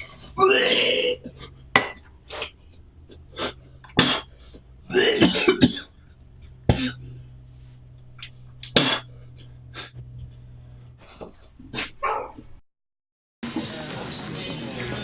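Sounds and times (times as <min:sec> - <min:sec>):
steady low hum: 0:00.0 - 0:12.6
man coughing and spluttering: 0:03.4 - 0:06.0, 0:06.7 - 0:07.0, 0:08.6 - 0:09.1.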